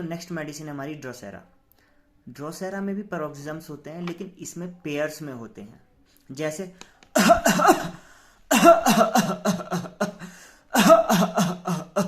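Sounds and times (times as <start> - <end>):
man coughing: 7.2 - 12.0.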